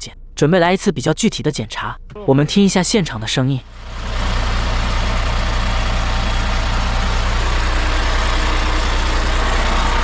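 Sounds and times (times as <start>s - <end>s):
diesel truck engine idling: 3.6s - 10.0s
metallic vibrating rattle: 3.7s - 10.0s.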